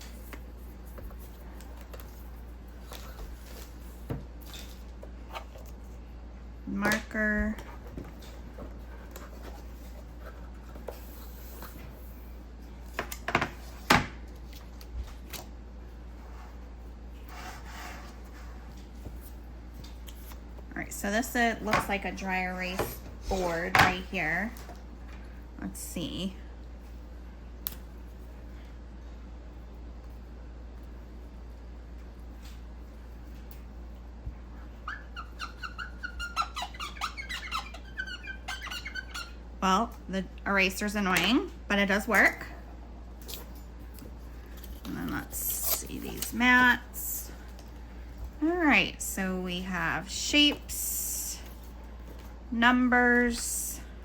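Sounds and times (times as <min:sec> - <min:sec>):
marker squeaking on whiteboard: 0:34.8 - 0:39.4.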